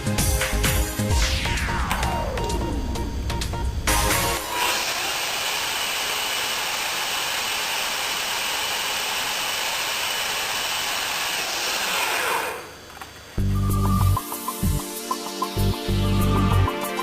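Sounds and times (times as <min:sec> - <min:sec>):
drill motor running: 0:03.8 - 0:13.2.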